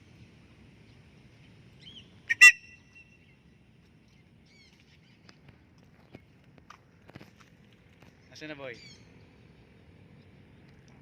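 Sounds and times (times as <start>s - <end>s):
small birds chirping: 0.8s - 6.4s, 8.1s - 10.9s.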